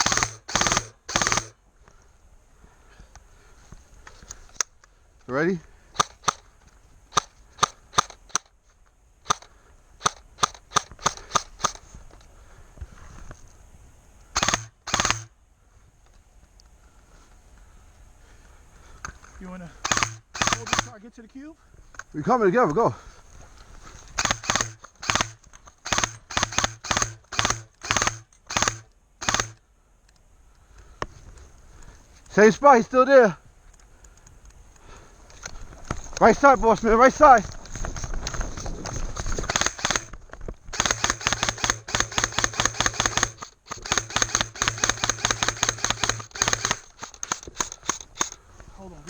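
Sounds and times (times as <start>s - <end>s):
airsoft gun shots: 0.0s - 1.6s, 6.0s - 6.5s, 9.2s - 12.0s, 14.4s - 15.3s, 19.8s - 21.0s, 24.2s - 29.6s, 36.2s - 37.5s, 38.2s - 48.4s.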